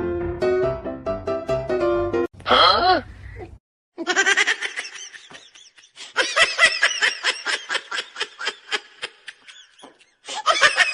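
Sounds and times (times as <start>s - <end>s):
high-pitched laughter: 4.0s - 10.9s.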